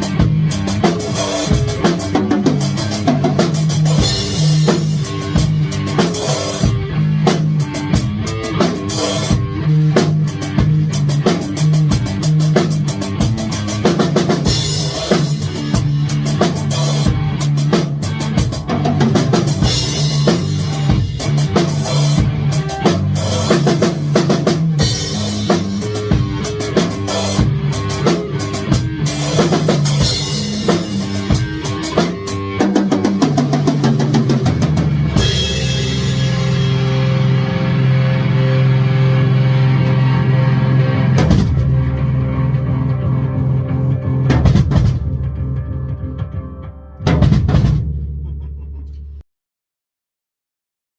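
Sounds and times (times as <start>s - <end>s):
rock music: 0.0s - 48.3s
drum kit beat: 0.0s - 48.8s.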